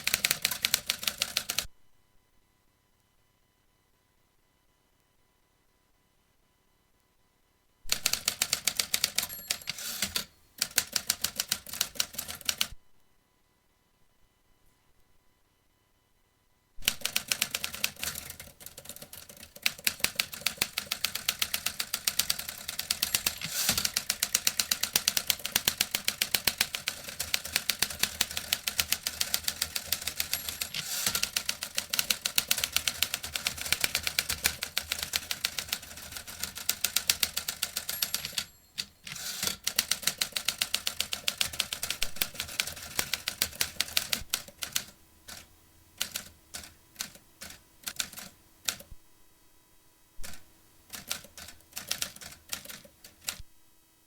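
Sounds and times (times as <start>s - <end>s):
typewriter typing: 0.0s - 1.7s, 7.9s - 12.8s, 16.8s - 48.9s, 50.2s - 53.4s.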